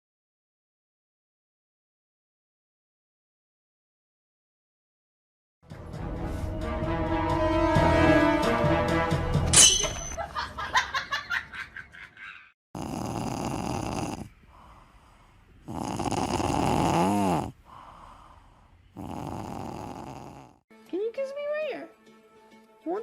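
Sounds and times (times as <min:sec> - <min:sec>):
music: 0:05.6 - 0:10.1, 0:20.7 - 0:23.0
pet snoring: 0:12.8 - 0:20.6.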